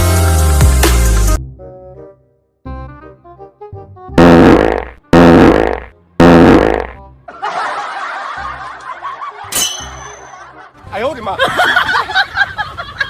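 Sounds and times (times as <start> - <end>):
fart sound effect: 4.2 - 7.0.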